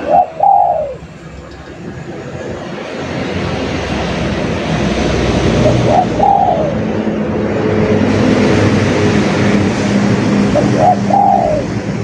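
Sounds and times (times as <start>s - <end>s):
dove cooing: 0.0s - 2.0s, 5.5s - 6.9s, 10.5s - 11.8s.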